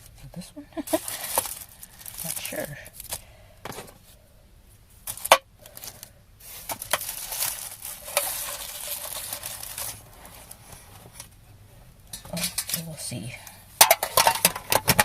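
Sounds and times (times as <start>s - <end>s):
candy wrappers crinkling: 0.8s - 3.2s, 5.0s - 11.3s.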